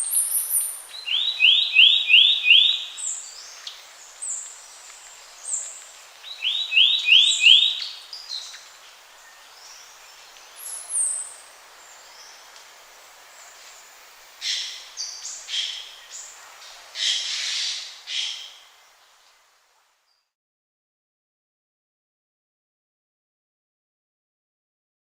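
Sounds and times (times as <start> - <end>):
wild birds calling: 0.0 - 8.7, 14.4 - 18.8
faint steady hiss: 0.0 - 20.4.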